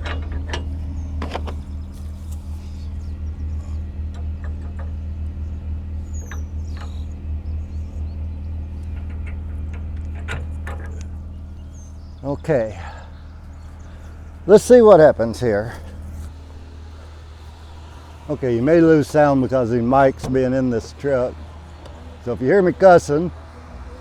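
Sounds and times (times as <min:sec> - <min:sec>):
clicks and knocks: 0:00.0 - 0:05.5, 0:08.8 - 0:11.6
truck engine idling: 0:00.0 - 0:24.0.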